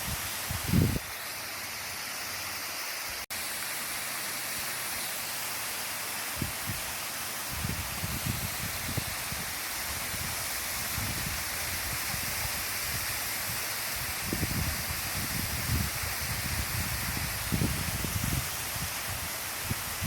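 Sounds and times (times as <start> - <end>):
wind buffeting the microphone: 0.0 - 1.1, 7.5 - 20.0.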